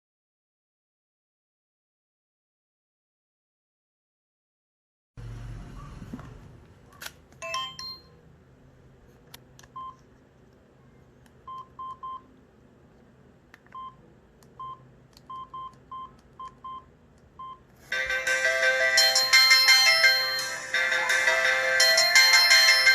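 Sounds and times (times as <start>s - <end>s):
loud ringtone: 7.4s - 8.1s, 17.9s - 22.9s
short key-press beeps: 14.6s - 16.8s.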